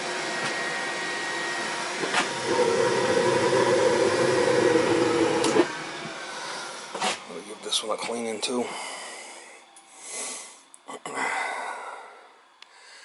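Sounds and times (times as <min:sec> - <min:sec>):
machine motor whirring: 0:02.0 - 0:06.2
loud droning hum: 0:02.0 - 0:09.8.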